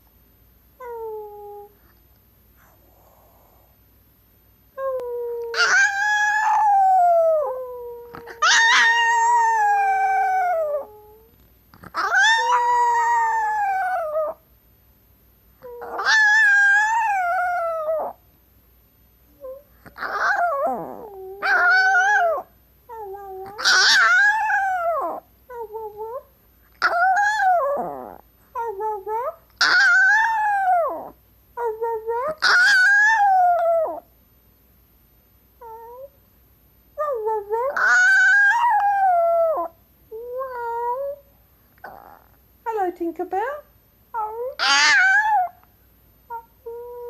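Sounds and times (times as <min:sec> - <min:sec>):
small dog howling: 0:04.8 - 0:14.4, 0:15.6 - 0:18.2, 0:19.4 - 0:34.1, 0:37.0 - 0:41.2, 0:41.8 - 0:42.4, 0:44.2 - 0:45.7, 0:46.3 - 0:47.0.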